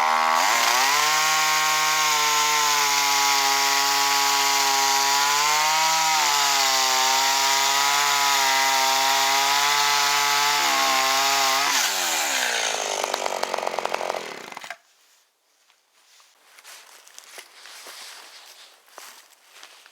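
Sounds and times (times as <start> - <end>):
chainsaw engine running: 0.0 - 14.8.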